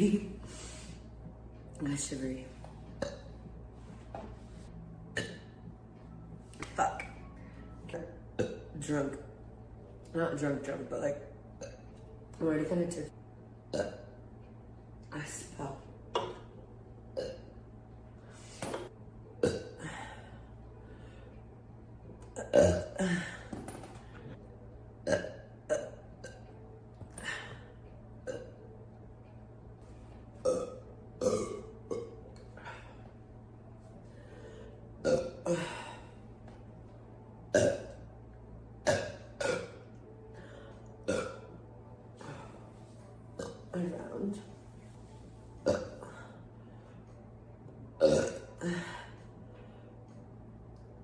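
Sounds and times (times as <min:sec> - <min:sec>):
woman burping: 0:03.0 - 0:03.4, 0:05.1 - 0:05.5, 0:08.4 - 0:08.8, 0:13.7 - 0:14.2, 0:17.2 - 0:17.5, 0:19.4 - 0:20.1, 0:22.4 - 0:23.9, 0:25.0 - 0:26.5, 0:28.2 - 0:28.6, 0:30.4 - 0:32.9, 0:35.0 - 0:36.1, 0:37.5 - 0:38.0, 0:38.8 - 0:39.8, 0:41.0 - 0:41.6, 0:43.4 - 0:43.8, 0:45.6 - 0:46.3, 0:48.0 - 0:49.0.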